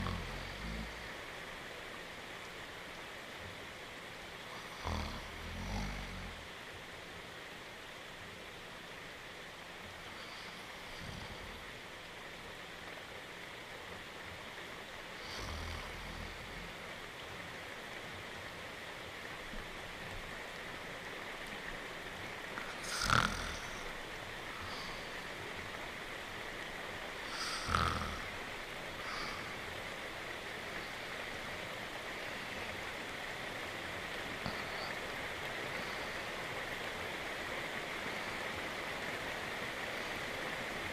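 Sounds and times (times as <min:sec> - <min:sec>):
cartoon dog snoring: 0:00.0 - 0:01.0, 0:04.6 - 0:06.4, 0:15.2 - 0:16.4, 0:22.7 - 0:23.8, 0:27.3 - 0:28.4
rain hiss: 0:00.0 - 0:40.9.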